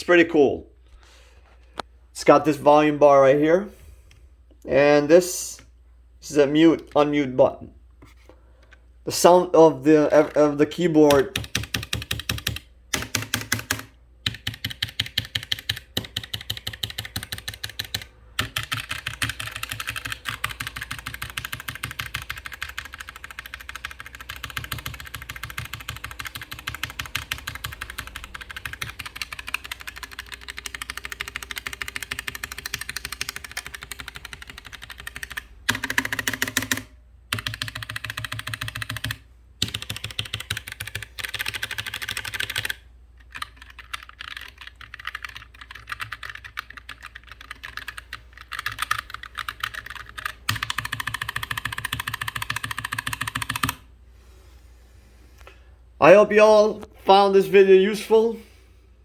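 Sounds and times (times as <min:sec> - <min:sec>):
fast keyboard typing clicks: 0:11.1 - 0:53.9.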